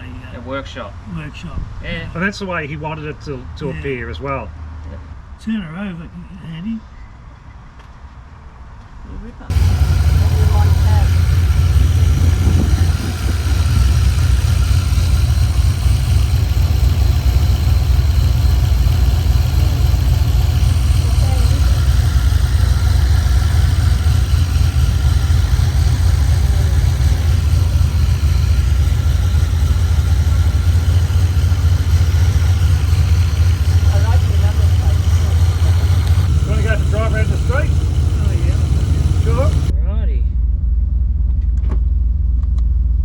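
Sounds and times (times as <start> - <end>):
car engine idling: 9.5 - 39.7.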